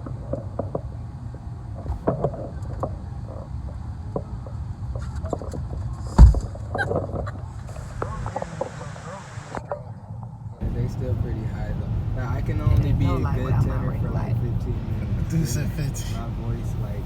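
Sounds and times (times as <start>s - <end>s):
car engine and tyres rumbling: 0.0s - 17.0s
loud thump: 6.1s - 6.7s.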